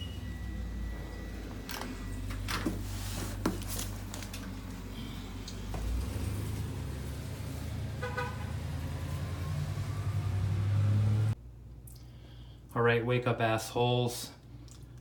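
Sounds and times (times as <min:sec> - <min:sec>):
motor vehicle humming: 0:00.0 - 0:11.4
car horn toot: 0:08.0 - 0:08.7.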